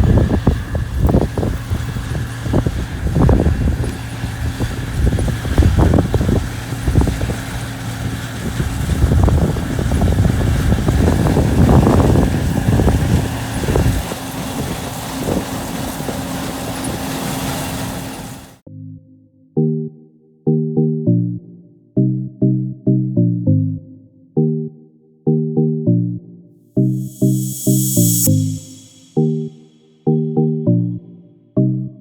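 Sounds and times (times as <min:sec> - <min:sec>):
vehicle engine humming: 0:00.0 - 0:18.6, 0:27.1 - 0:29.5
wind buffeting microphone: 0:00.0 - 0:18.6.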